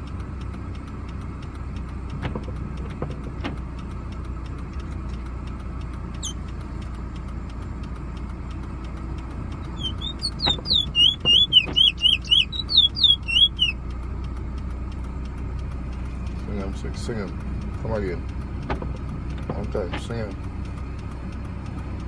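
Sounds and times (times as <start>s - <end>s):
car engine running: 0.0s - 22.0s
bird chirp: 6.2s - 6.4s, 9.6s - 13.8s
bullfinch whistled song: 6.2s - 6.4s, 9.6s - 13.8s.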